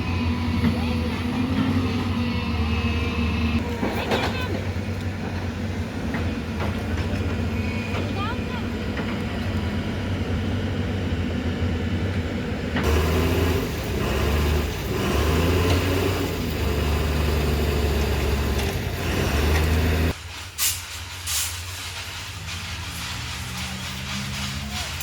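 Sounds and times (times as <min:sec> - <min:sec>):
diesel engine running: 0:00.0 - 0:20.2
sharp hisses of released air: 0:20.2 - 0:25.0.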